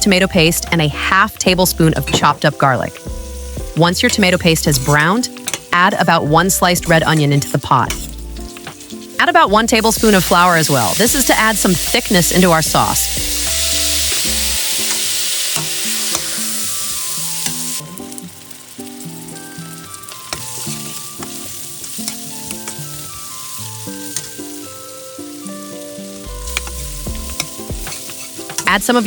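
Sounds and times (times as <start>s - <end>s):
food sizzling in oil: 0.0s - 29.0s
soft background melody: 0.0s - 29.0s
utensil stirring in pot: 26.2s - 28.9s.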